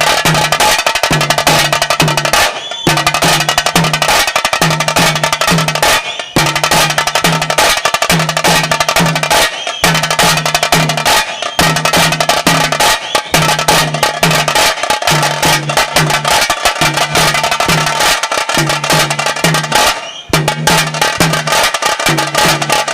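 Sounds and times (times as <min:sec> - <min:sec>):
fast drumming with sticks: 0:00.0 - 0:22.9
deep drum note: 0:18.6 - 0:22.9.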